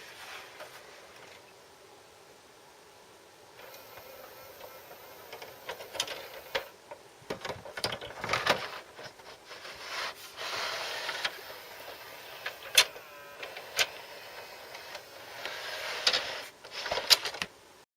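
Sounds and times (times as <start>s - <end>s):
sharp mechanical clicks and knocks: 3.6s - 6.7s
disc player whirring and rattling: 3.6s - 17.6s.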